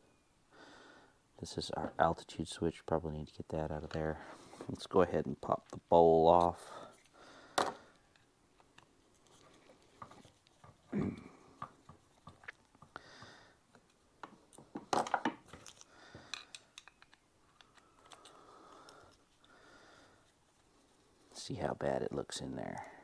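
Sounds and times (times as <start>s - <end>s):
metal parts clicking and knocking: 14.5s - 19.2s.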